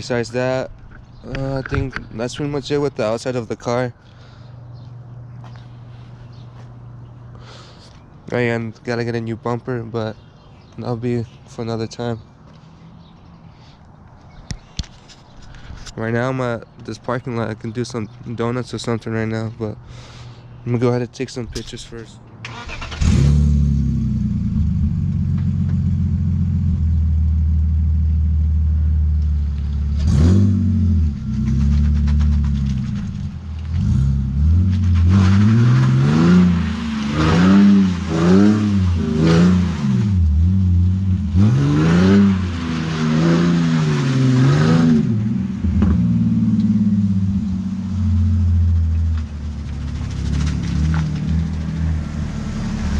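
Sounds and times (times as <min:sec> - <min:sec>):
car engine idling and revving: 0:22.5 - 0:52.9.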